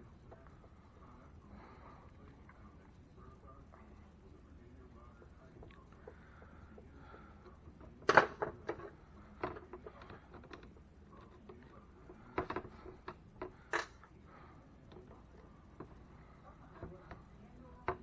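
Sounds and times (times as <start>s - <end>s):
small parts and tools clattering: 7.4s - 14.1s.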